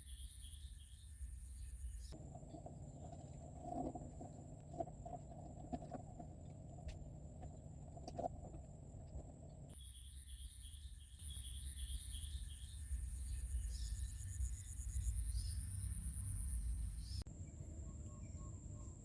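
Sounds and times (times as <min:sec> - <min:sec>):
insects droning: 0:00.0 - 0:19.0
low rumble: 0:02.2 - 0:09.8.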